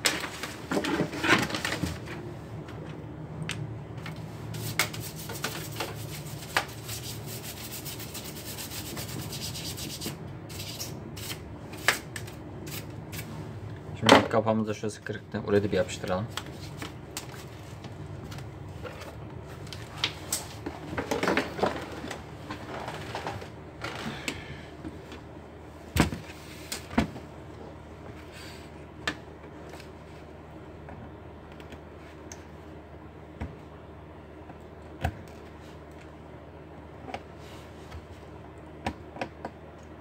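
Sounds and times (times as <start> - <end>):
rustling and scraping plastic: 0.0 - 2.2, 16.4 - 24.2
steady low hum: 0.0 - 40.0.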